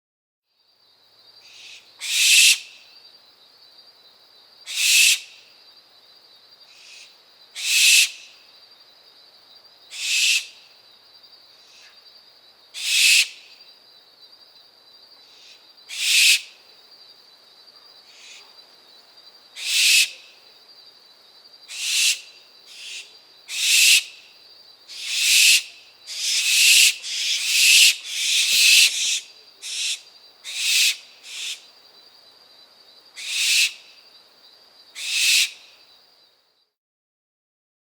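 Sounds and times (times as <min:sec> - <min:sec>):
owl fledgling hissing screeches: 0:01.4 - 0:02.8, 0:04.7 - 0:05.4, 0:06.7 - 0:08.4, 0:09.9 - 0:10.6, 0:12.8 - 0:13.5, 0:15.3 - 0:16.6, 0:18.1 - 0:18.5, 0:19.6 - 0:20.3, 0:21.7 - 0:24.3, 0:24.9 - 0:31.7, 0:33.2 - 0:33.9, 0:35.0 - 0:35.7.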